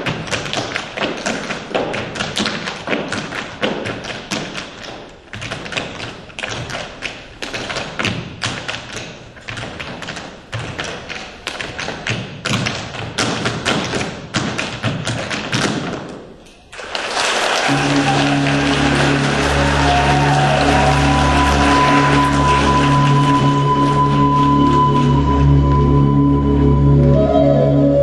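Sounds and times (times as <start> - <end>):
hard-soled shoes tapping on stage: 0.0 - 21.0.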